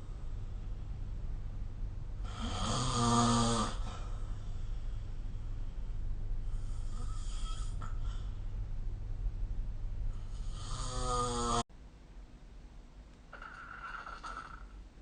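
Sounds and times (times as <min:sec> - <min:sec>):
person snoring: 0:02.2 - 0:04.2, 0:06.5 - 0:08.3, 0:10.2 - 0:11.6
quiet breath: 0:03.8 - 0:08.6, 0:10.0 - 0:10.6.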